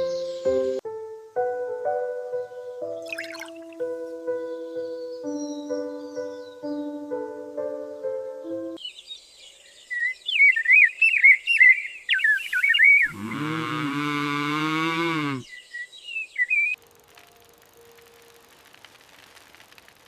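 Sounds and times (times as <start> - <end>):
songbird warbling: 8.8 - 13.3
long low animal call: 13.0 - 15.5.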